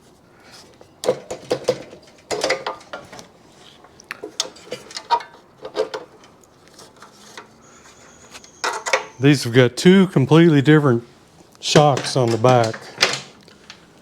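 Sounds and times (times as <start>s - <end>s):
hand tools clinking on metal parts: 8.5s - 9.2s, 11.7s - 13.3s.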